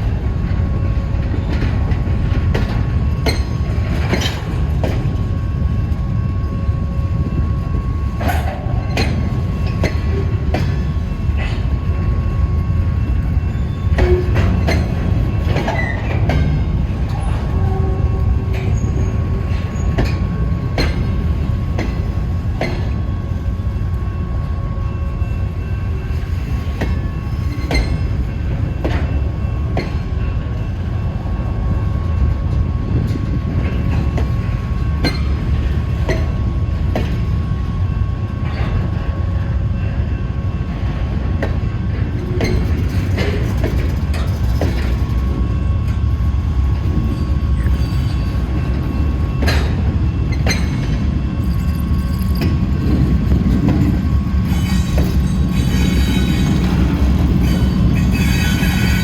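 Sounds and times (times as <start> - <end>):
freight train rumbling: 0.0 - 59.0
wheels clunking over rail joints: 13.6 - 23.0.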